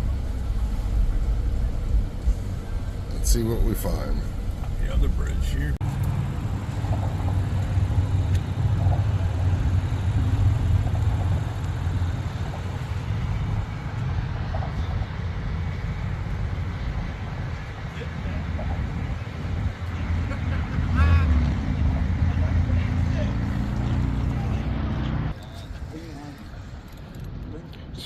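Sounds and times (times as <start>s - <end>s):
car road and engine rumble: 0.0s - 28.0s.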